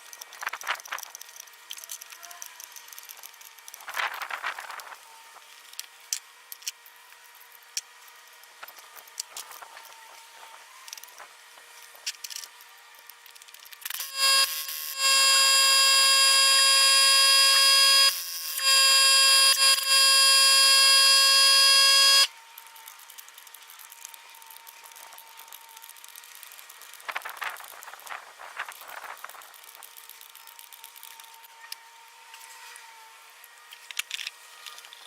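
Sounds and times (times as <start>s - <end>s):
air impact wrench whining: 13.9s - 22.3s.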